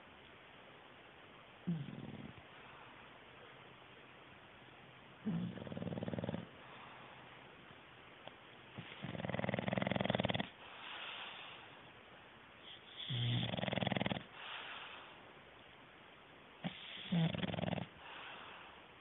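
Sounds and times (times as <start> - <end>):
dog snoring: 1.6 - 2.4, 5.2 - 7.0, 8.7 - 11.6, 12.6 - 15.1, 16.6 - 18.7
breathy exhale: 10.6 - 11.7, 18.0 - 18.9.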